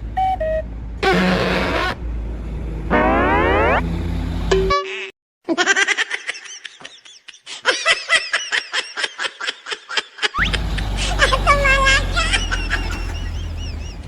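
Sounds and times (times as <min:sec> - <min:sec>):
low engine rumble: 0:00.0 - 0:04.7, 0:10.4 - 0:14.0
high-pitched laughing: 0:04.9 - 0:14.0.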